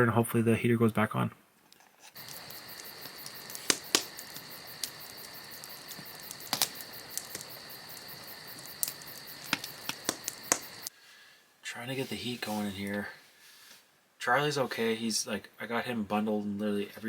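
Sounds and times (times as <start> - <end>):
campfire crackling: 1.6 - 11.3, 11.9 - 13.7
fire popping sharply: 2.2 - 10.9.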